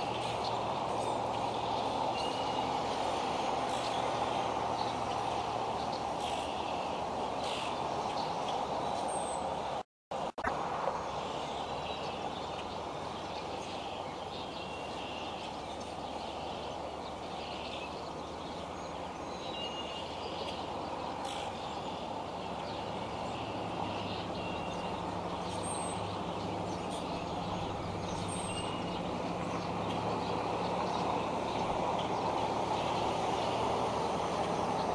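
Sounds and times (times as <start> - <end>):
low engine-like hum: 0.0 - 34.9
outdoor background noise: 0.0 - 34.9.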